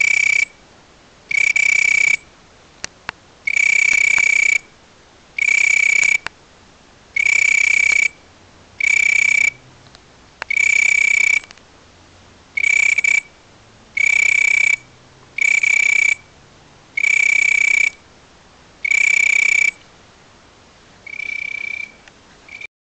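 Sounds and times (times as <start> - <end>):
insect whistling trill: 1.3 - 2.3, 3.5 - 4.7, 5.4 - 6.3, 7.2 - 8.2, 8.8 - 9.6, 10.5 - 11.5, 12.6 - 13.4, 14.0 - 16.3, 17.0 - 18.0, 18.8 - 19.8, 21.0 - 22.7.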